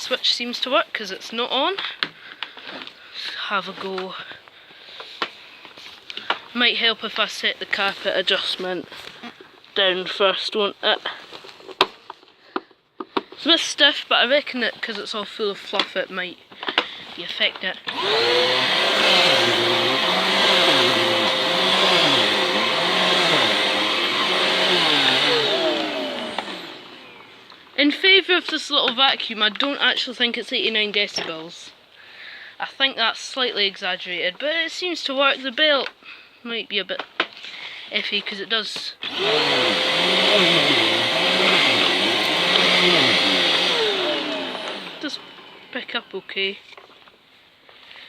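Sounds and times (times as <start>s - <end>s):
vacuum cleaner on carpet: 17.9s - 27.3s, 39.0s - 45.7s
vacuum motor winding down: 17.9s - 27.5s, 39.0s - 45.7s.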